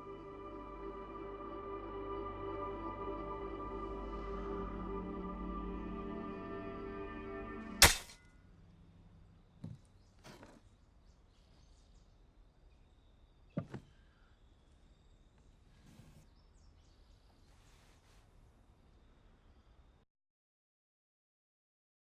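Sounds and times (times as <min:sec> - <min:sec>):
sustained music: 0:00.0 - 0:08.1
loud sharp impact: 0:07.8 - 0:08.2.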